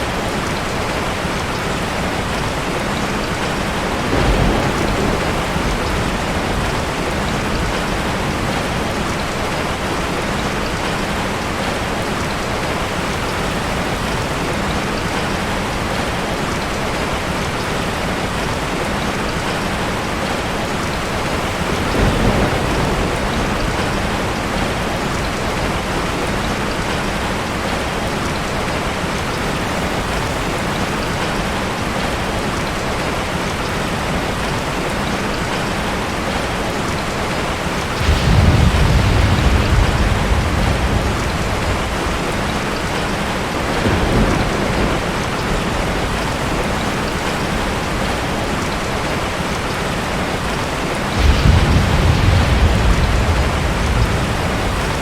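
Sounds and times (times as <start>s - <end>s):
low rumble of thunder: 0.0s - 16.8s, 21.0s - 27.8s, 37.5s - 55.0s
steady rain falling: 0.0s - 55.0s.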